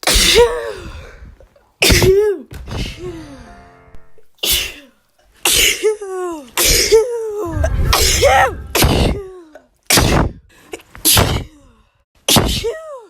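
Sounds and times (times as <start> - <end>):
woman sneezing: 0.0 - 1.0, 4.4 - 4.9, 11.1 - 11.5, 12.3 - 13.0.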